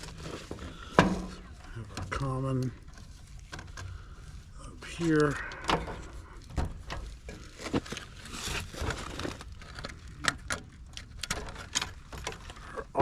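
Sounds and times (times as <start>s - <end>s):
wires rustling and clicking: 0.0s - 13.0s.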